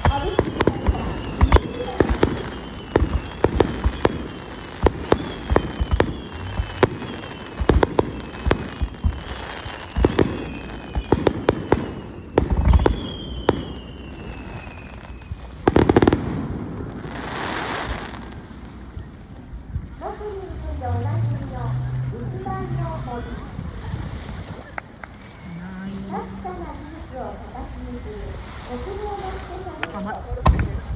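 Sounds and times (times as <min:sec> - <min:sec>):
falling firework whistles: 0:00.0 - 0:20.0
fireworks bangs: 0:00.0 - 0:30.9.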